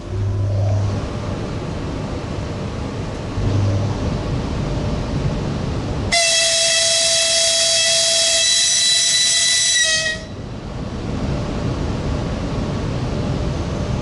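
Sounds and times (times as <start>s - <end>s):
moving train rumble: 0.0s - 14.0s
locomotive horn blast: 6.1s - 10.4s.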